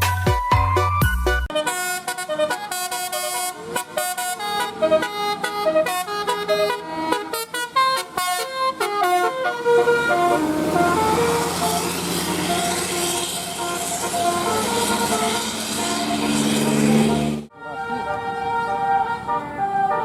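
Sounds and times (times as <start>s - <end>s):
multi-tone bus horn melody: 0.0s - 20.0s
broad rushing noise: 10.1s - 17.5s.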